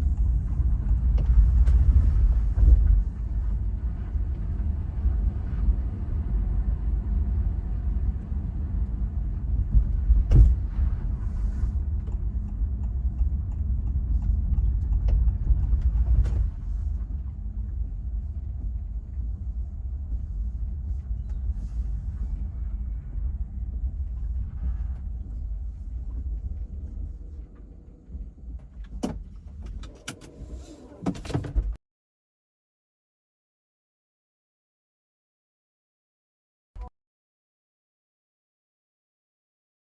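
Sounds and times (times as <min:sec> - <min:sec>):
road rumble inside car: 0:00.0 - 0:31.8.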